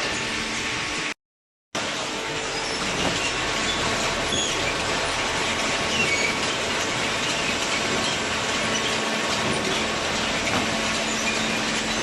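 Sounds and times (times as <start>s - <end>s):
steady machinery noise: 0.0s - 1.2s, 1.8s - 12.0s.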